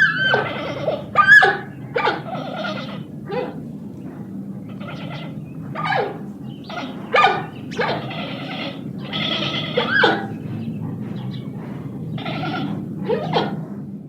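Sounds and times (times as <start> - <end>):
animal cries dropping in pitch: 0.0 - 3.6, 4.8 - 10.3
drawn-out animal calls: 0.0 - 13.9.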